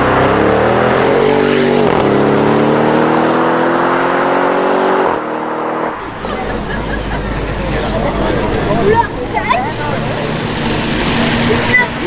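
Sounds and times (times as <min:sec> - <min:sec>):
car engine accelerating hard: 0:00.0 - 0:12.0.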